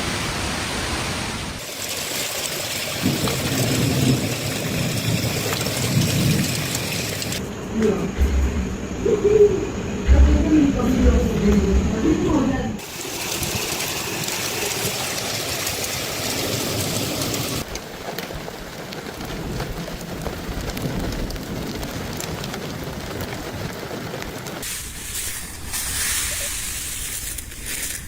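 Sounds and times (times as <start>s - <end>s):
hail and heavy rain: 0.0s - 7.4s, 12.8s - 28.0s.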